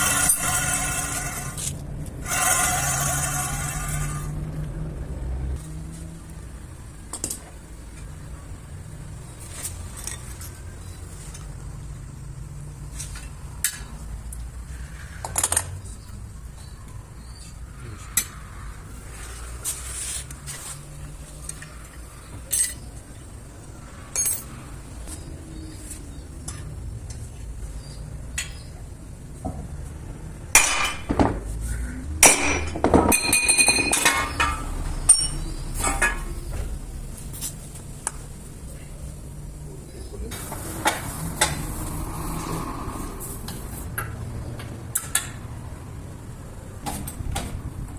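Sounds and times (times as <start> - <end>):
metal tools clinking: 22.5 - 22.9, 24.1 - 24.6, 32.3 - 36.4
ringing metal strikes: 32.2 - 36.4.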